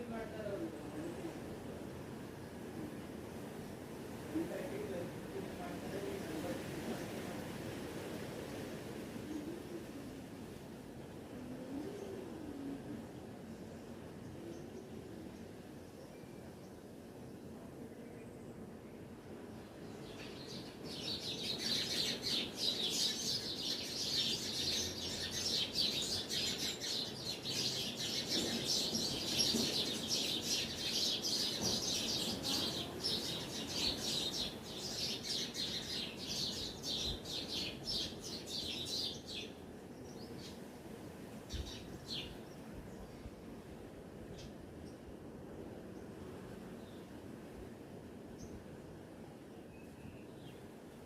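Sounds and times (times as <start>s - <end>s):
birds chirping: 19.2s - 40.6s.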